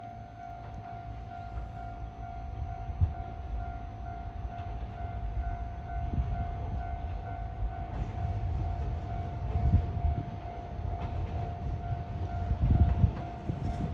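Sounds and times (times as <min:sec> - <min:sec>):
train rumbling to a stop: 0:00.0 - 0:13.9
train wheel thumps: 0:07.8 - 0:13.9.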